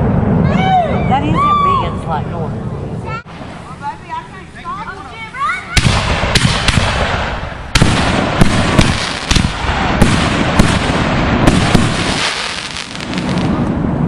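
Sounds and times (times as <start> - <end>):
fireworks banging and crackling: 3.3 - 14.0.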